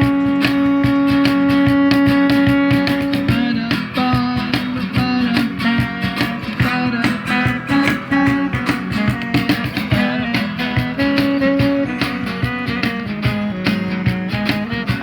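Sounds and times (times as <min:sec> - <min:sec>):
rock guitars playing melody: 0:00.0 - 0:15.0
steady drum beat: 0:00.0 - 0:15.0.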